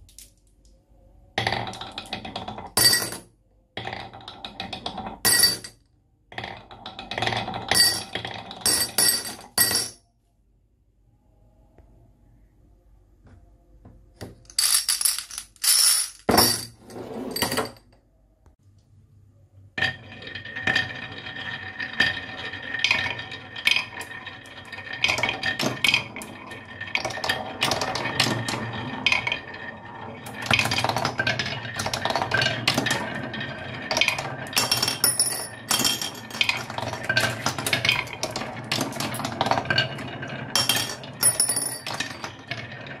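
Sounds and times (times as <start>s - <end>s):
marbles clattering through marble run: 1.4s - 3.2s, 6.3s - 9.9s, 19.8s - 43.0s.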